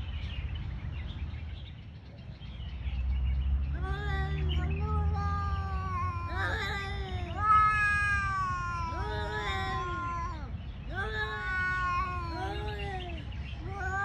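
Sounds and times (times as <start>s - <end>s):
cats yowling: 4.8s - 14.0s.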